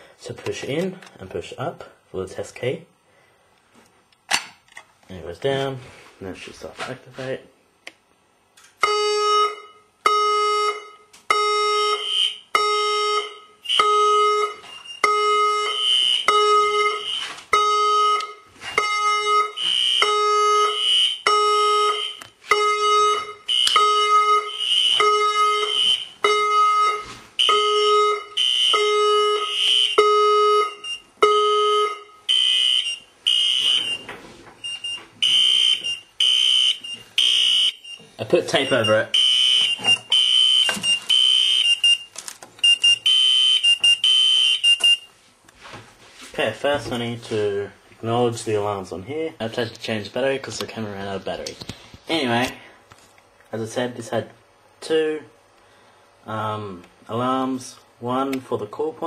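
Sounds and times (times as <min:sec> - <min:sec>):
pulsing fire alarm tone: 0:08.8 - 0:38.0, 0:38.6 - 0:45.1
higher-pitched alarm tone: 0:08.8 - 0:45.1.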